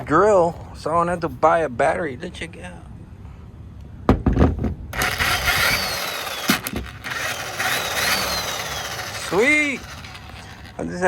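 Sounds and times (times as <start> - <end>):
electric drill motor whining: 5.0 - 11.0.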